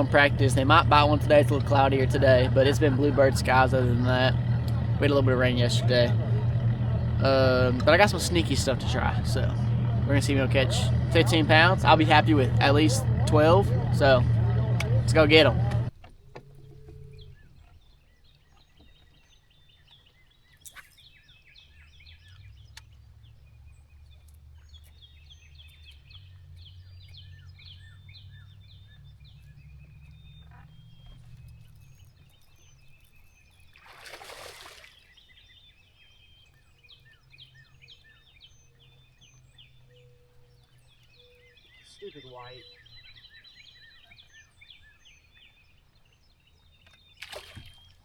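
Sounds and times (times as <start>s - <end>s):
low steady rumble: 0.0s - 18.1s, 21.8s - 33.6s.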